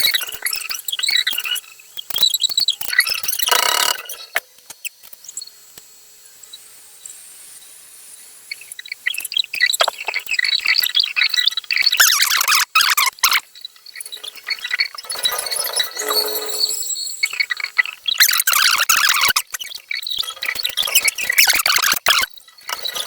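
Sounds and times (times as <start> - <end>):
turning tool scraping spinning wood: 14.1 - 17.2.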